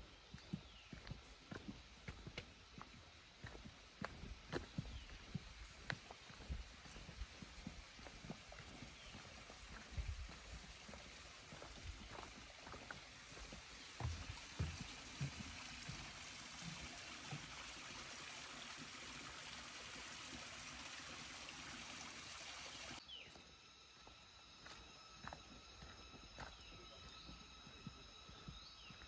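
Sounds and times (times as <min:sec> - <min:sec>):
footsteps on trail: 0:00.0 - 0:16.0, 0:23.1 - 0:29.0.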